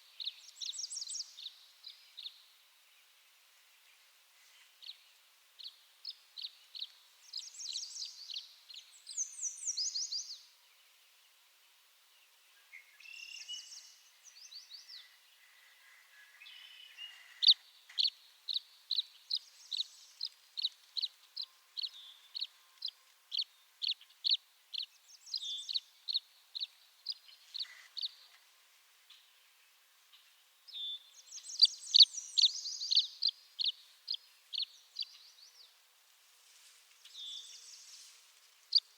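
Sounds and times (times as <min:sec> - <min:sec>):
bird chirping: 0:00.1 - 0:03.1, 0:04.8 - 0:11.2, 0:12.2 - 0:28.4, 0:29.0 - 0:35.8, 0:37.0 - 0:38.9.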